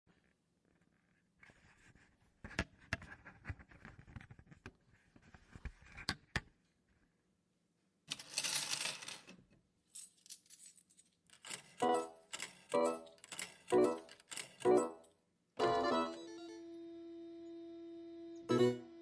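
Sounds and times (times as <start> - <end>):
rattling rush of coins: 8.1 - 9.3, 10.0 - 14.9
coins clinking and dropping: 8.1 - 15.1.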